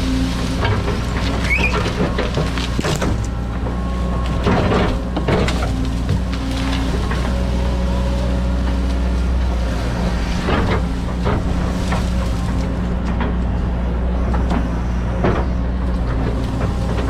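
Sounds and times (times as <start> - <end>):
bucket cracking brush and roots: 0.0 - 13.1
excavator diesel engine running: 0.0 - 17.0.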